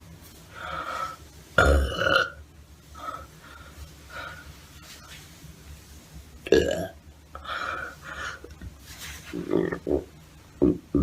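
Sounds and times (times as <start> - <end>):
person burping: 1.6 - 2.4, 6.5 - 7.0, 9.4 - 11.0.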